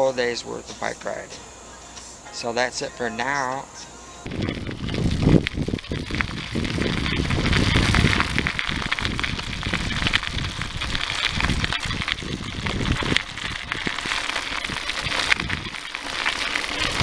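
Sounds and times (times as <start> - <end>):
wind rushing over microphone: 4.2 - 17.0.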